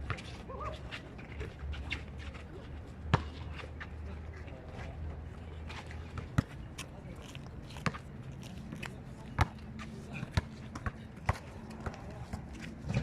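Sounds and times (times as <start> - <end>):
faint voices: 3.4 - 13.0.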